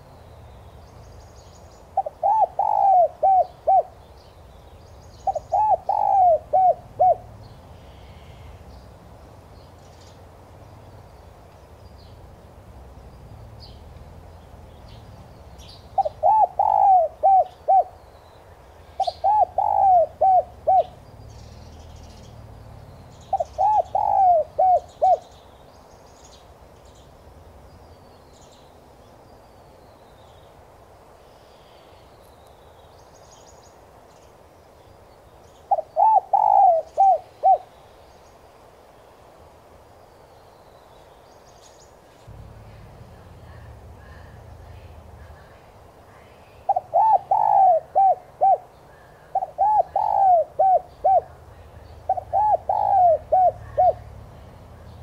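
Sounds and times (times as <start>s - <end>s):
dove cooing: 2.0s - 4.0s, 5.2s - 7.3s, 15.9s - 18.0s, 18.9s - 21.0s, 23.3s - 25.3s, 35.7s - 37.7s, 46.6s - 54.4s.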